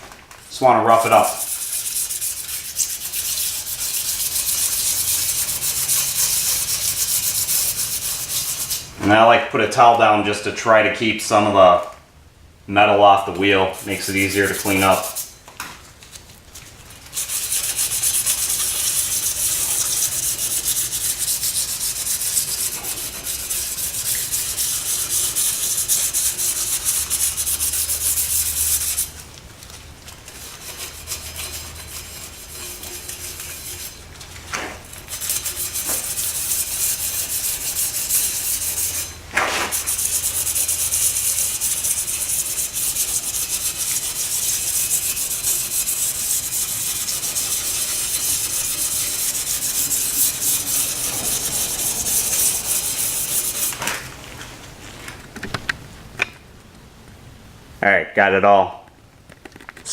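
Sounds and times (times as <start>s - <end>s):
sandpaper scrubbing on metal disc: 0.6s - 9.0s, 13.4s - 15.4s, 16.8s - 29.3s, 30.1s - 54.1s.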